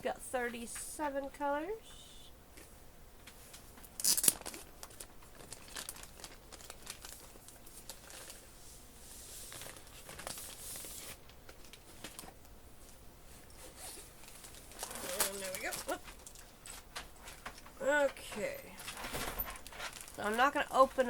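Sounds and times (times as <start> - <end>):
plastic crinkling and rustling: 3.2 - 21.0
plastic packaging tearing: 3.9 - 8.5, 9.4 - 12.3, 14.2 - 17.7, 18.8 - 20.3.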